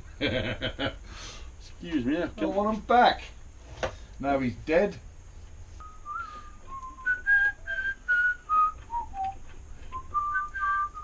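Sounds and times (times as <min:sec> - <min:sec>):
person whistling a tune: 0:05.8 - 0:11.0.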